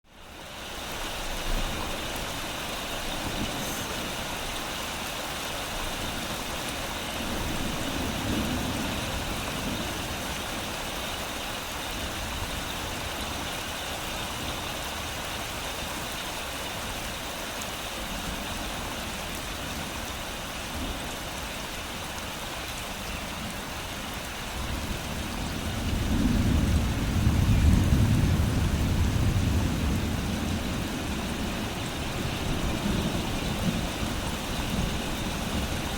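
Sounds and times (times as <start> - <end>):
rain falling on leaves: 0.0 - 35.9
thunder rumbling: 1.6 - 15.1, 24.5 - 35.9.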